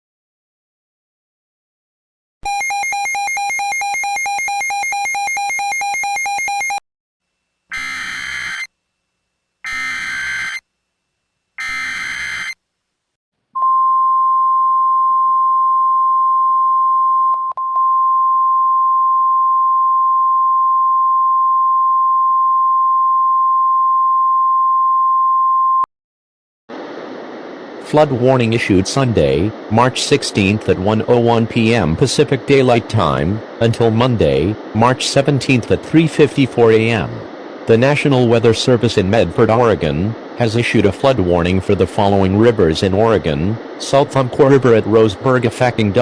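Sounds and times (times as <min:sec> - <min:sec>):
steady warning alarm tone: 0:02.4 - 0:06.8, 0:07.7 - 0:08.7, 0:09.6 - 0:10.6, 0:11.6 - 0:12.6
buzzy pulsing tone: 0:07.7 - 0:08.7, 0:09.6 - 0:10.6, 0:11.6 - 0:12.6
data bursts: 0:07.7 - 0:08.7, 0:09.6 - 0:10.6, 0:11.6 - 0:12.6.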